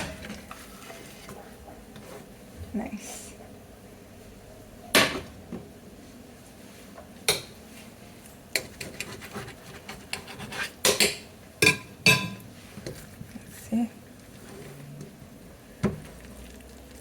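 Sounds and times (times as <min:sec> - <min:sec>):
cookware and utensils clattering: 0:08.6 - 0:13.0.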